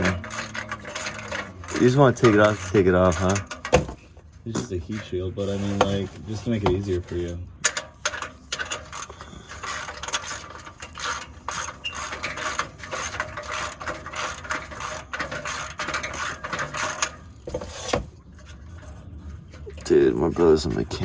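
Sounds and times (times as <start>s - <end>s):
ratchet wrench clicking: 0.0s - 3.7s, 8.0s - 17.4s.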